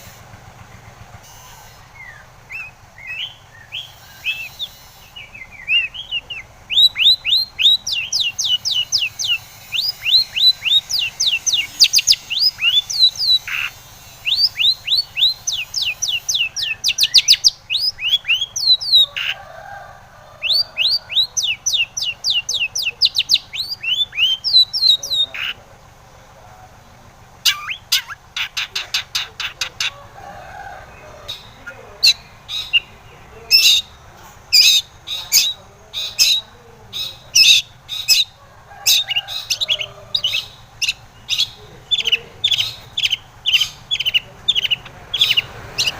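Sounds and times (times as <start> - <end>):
bird singing sharp sweeping notes: 1.2 - 19.2.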